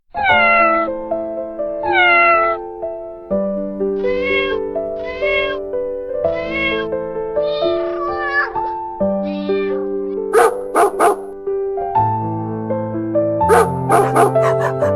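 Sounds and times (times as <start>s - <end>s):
cat meowing: 0.1s - 0.9s, 1.8s - 2.6s, 4.0s - 5.6s, 6.3s - 8.5s, 13.6s - 14.9s
background music with held notes: 0.3s - 14.9s.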